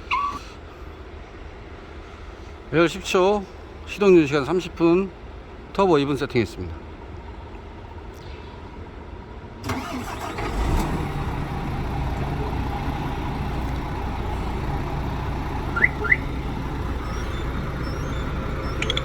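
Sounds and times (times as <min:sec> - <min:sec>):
diesel engine cranking and idling: 0:09.6 - 0:19.0
short rising chirps: 0:15.7 - 0:19.0.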